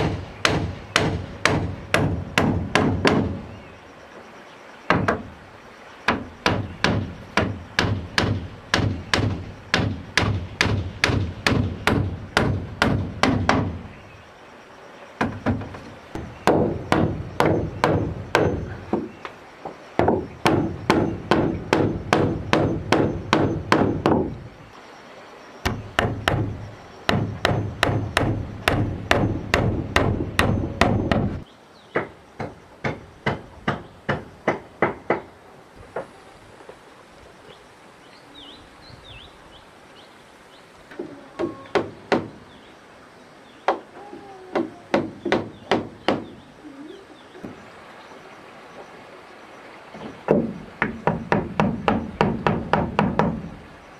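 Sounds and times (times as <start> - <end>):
hand tool striking wood: 0.0 - 3.4, 6.1 - 13.8, 27.1 - 31.4, 50.3 - 53.5.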